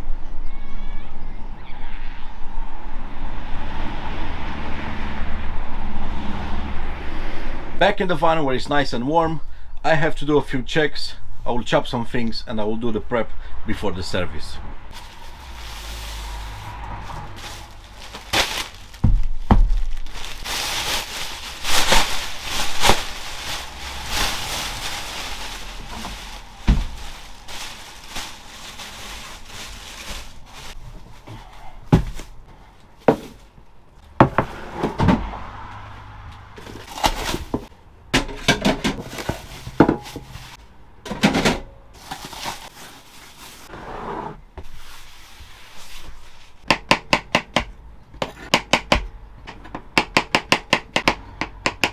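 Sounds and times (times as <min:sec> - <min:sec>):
rustling: 0:14.9 - 0:34.4, 0:36.6 - 0:37.7, 0:38.9 - 0:40.8, 0:41.9 - 0:43.8, 0:44.6 - 0:46.6
knocks and thuds: 0:18.4 - 0:20.0, 0:25.9 - 0:27.4, 0:31.9 - 0:32.4, 0:34.2 - 0:35.3.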